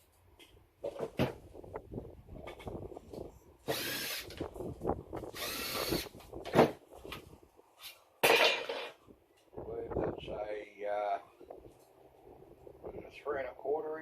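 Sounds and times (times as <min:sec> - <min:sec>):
power drill spinning: 0:03.6 - 0:04.4, 0:05.2 - 0:06.3.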